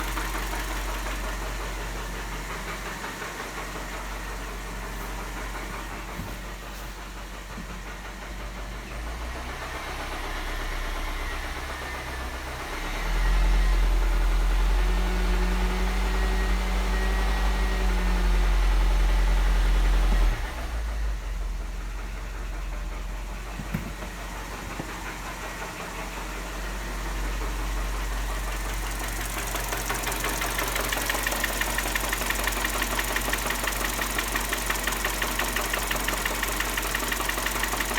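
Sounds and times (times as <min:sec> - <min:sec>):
car engine with knocking piston slap: 0:22.0 - 0:37.9.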